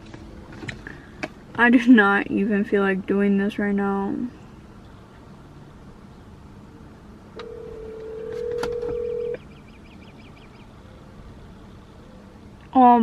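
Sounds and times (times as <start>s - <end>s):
phone clicks: 7.4s - 9.4s
phone ringback tone: 7.4s - 9.4s.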